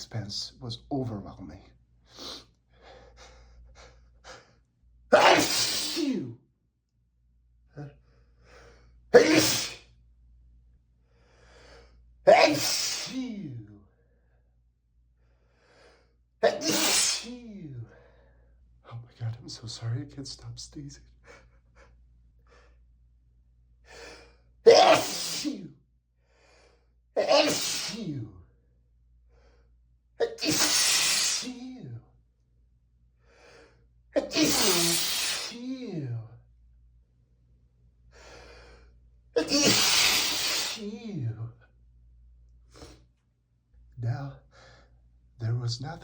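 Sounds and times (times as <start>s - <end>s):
man sneezing: 5.1s - 6.3s, 9.1s - 9.9s, 12.3s - 13.6s, 16.4s - 17.8s, 24.6s - 25.7s, 27.2s - 28.3s, 30.2s - 32.0s, 34.2s - 36.2s, 39.4s - 41.3s
quick intake of breath: 30.5s - 31.5s, 34.5s - 35.6s, 39.6s - 40.8s.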